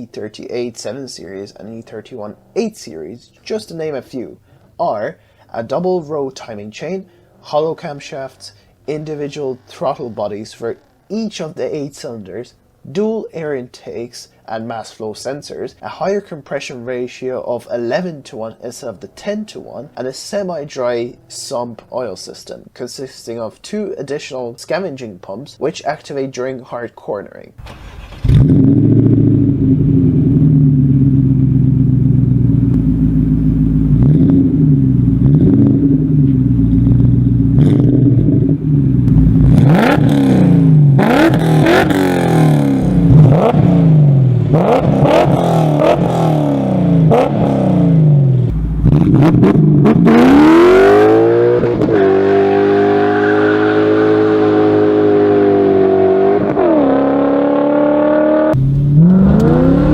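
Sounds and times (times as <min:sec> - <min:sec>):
car engine revving: 0:18.7 - 0:21.9, 0:27.6 - 0:59.9.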